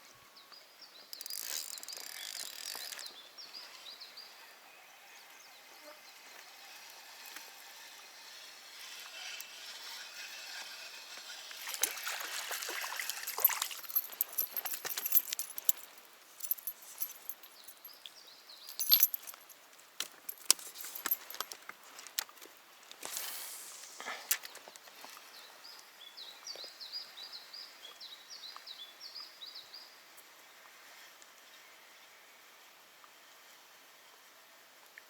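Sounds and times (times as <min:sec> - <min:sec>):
clicks and metallic rattles: 0:13.4 - 0:17.7, 0:18.7 - 0:22.4.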